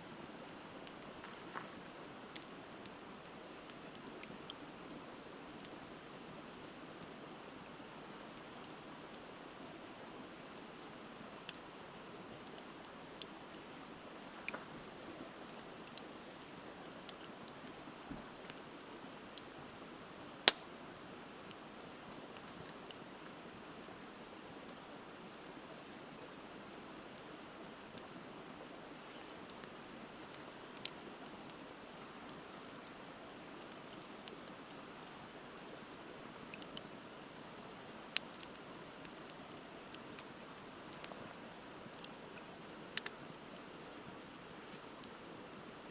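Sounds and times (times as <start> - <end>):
bonfire crackling and popping: 0.2 - 45.9.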